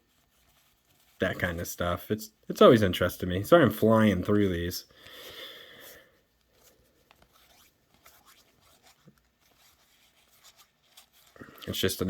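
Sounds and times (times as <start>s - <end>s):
faint rustle: 5.8s - 12.0s
trading cards shuffled: 6.4s - 11.9s.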